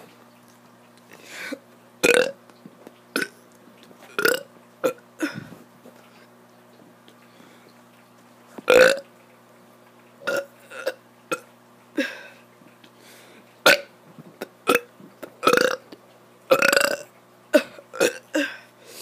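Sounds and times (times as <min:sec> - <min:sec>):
child burping: 0:16.5 - 0:18.6.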